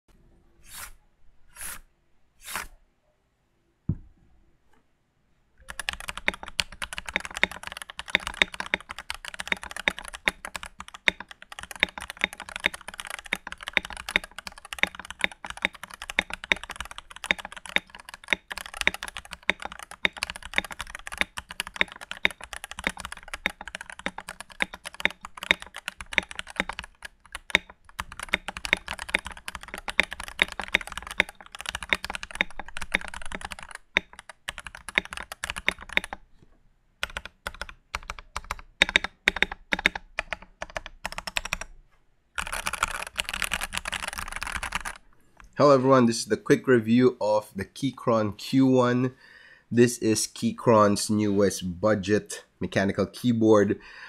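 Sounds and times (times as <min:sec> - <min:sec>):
mechanical keyboard typing: 0:05.6 - 0:36.3, 0:37.0 - 0:41.7, 0:42.4 - 0:45.0.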